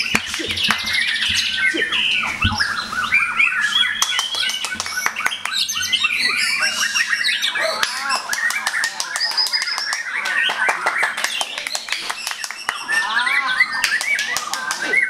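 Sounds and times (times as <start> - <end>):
rival birds singing: 0.0 - 15.0
songbird singing loudly: 0.0 - 15.0.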